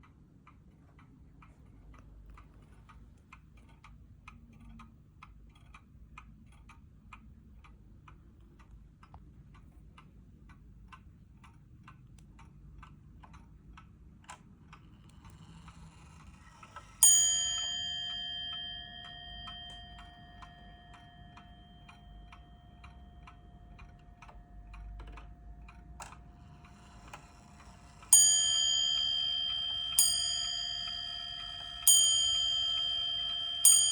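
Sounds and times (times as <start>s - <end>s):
pendulum clock ticking: 0.0s - 33.9s
clock bell ringing: 16.9s - 24.6s, 26.3s - 33.9s.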